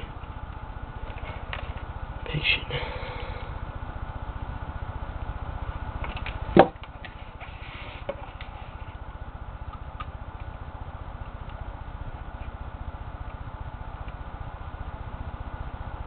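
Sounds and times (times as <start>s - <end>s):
steady low hum: 0.0s - 16.0s
loud sharp knock: 6.6s - 6.8s.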